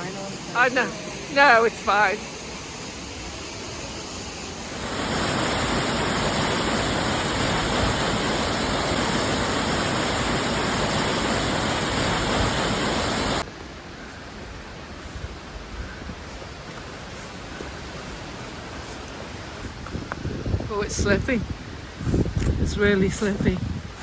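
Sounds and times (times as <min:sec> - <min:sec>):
waterfall rushing: 0:00.0 - 0:13.5
steady rush of water: 0:00.0 - 0:15.5.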